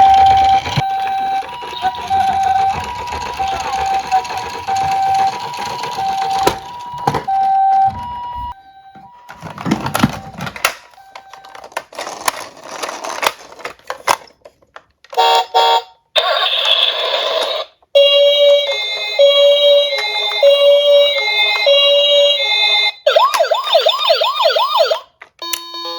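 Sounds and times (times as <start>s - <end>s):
toy cars clattering and rolling: 0.0s - 7.9s, 9.3s - 15.2s
toy siren two-tone: 0.0s - 11.7s, 18.0s - 25.9s.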